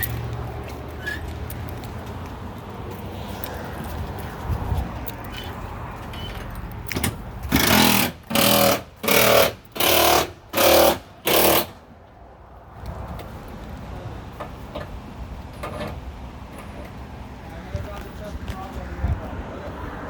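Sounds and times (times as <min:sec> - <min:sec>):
pneumatic impact wrench bursts: 0:07.5 - 0:11.8.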